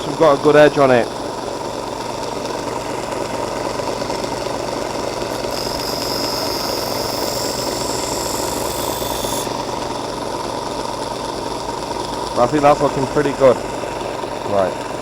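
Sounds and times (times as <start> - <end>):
high-pitched grinding hiss: 0.0 - 14.8
bench grinder motor running: 0.0 - 15.0.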